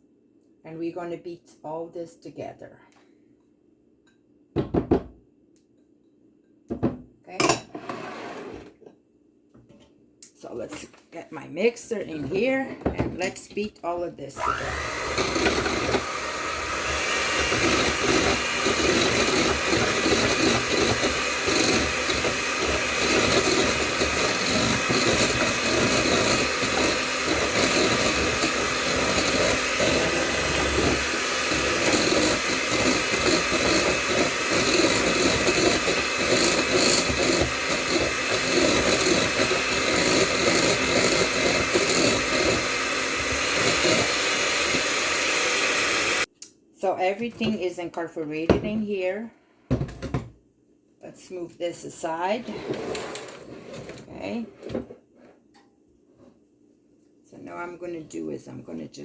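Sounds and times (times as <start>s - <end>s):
electric mixer whisking: 14.4s - 46.3s.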